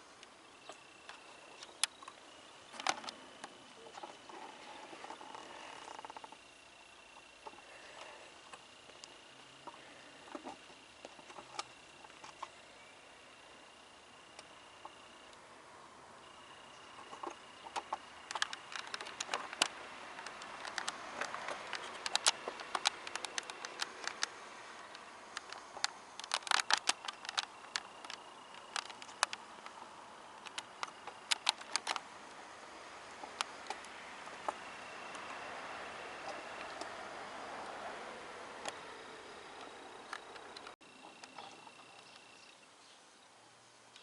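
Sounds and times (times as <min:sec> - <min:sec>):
thin steady high tone: 0:00.0 - 0:20.6
faint background hiss: 0:00.0 - 0:44.0
sharp clicks and ticks: 0:17.0 - 0:32.4.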